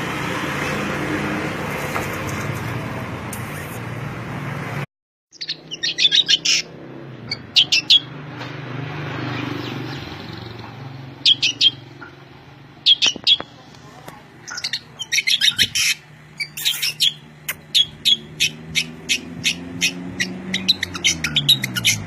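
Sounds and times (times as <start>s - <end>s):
songbird chirping: 5.3s - 8.2s, 9.2s - 22.0s.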